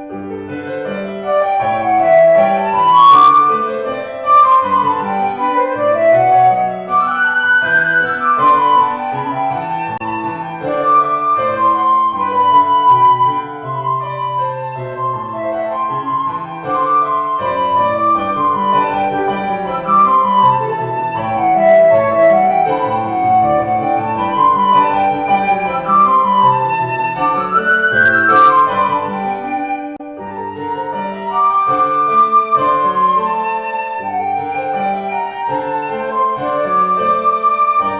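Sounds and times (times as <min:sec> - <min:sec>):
flute melody: 0:00.0 - 0:37.9
piano accompaniment: 0:00.0 - 0:37.9.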